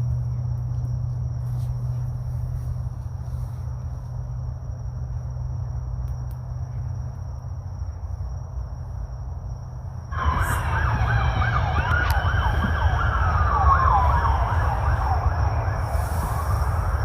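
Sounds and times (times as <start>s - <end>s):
low rumble: 0.0s - 17.0s
emergency siren yelping: 10.1s - 17.0s.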